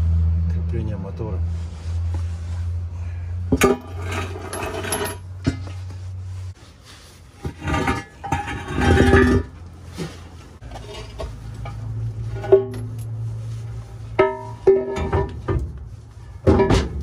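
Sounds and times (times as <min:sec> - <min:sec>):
metal tools clanking: 0:03.5 - 0:05.6, 0:10.6 - 0:13.2, 0:14.1 - 0:15.7.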